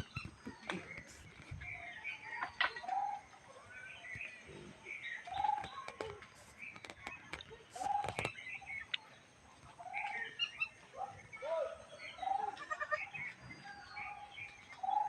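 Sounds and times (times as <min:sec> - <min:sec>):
chickens calling: 0:00.0 - 0:15.0
sharp clicks: 0:05.3 - 0:09.1.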